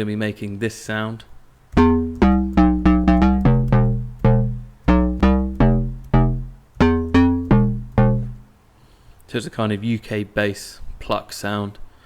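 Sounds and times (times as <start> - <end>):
deep sub-bass: 1.8 - 8.4
synth pluck riff: 1.8 - 8.5.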